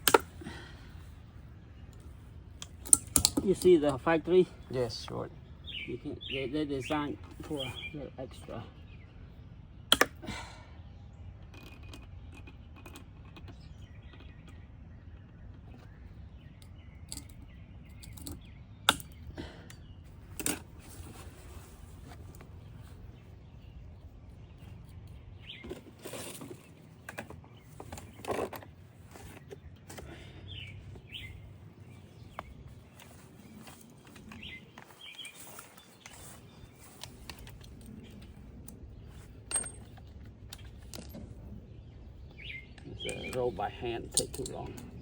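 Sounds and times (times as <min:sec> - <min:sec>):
metal tools clicking and knocking: 0:00.0 - 0:00.5, 0:01.9 - 0:04.1, 0:09.9 - 0:10.2, 0:11.4 - 0:14.6, 0:17.0 - 0:21.0, 0:37.0 - 0:41.2, 0:44.0 - 0:45.0
scraping and rustling: 0:20.1 - 0:23.3, 0:24.7 - 0:30.3.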